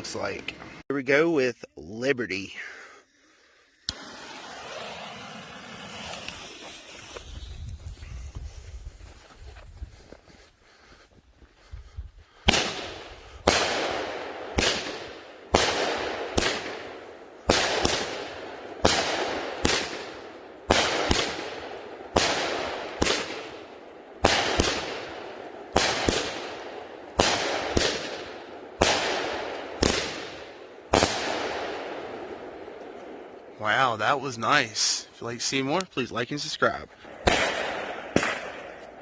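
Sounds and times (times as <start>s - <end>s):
firework bangs with hiss: 3.9s - 7.7s, 12.4s - 32.2s, 37.0s - 38.9s.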